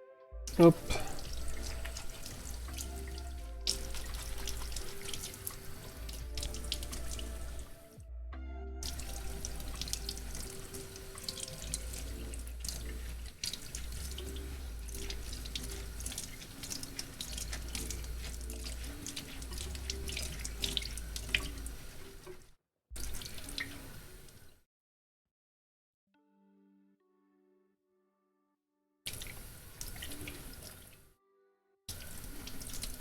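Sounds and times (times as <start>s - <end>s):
tap water running into sink: 0.5s - 8.0s, 8.8s - 22.4s, 23.0s - 24.5s, 29.1s - 30.9s, 31.9s - 33.0s
water splashing: 0.5s - 8.0s, 8.8s - 22.4s, 23.0s - 24.5s, 29.1s - 31.0s.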